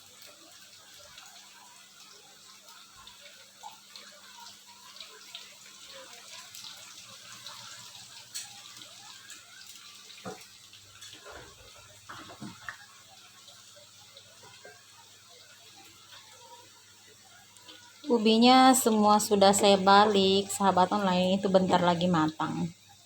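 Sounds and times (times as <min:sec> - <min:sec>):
food sizzling in hot oil: 0:00.0 - 0:23.0.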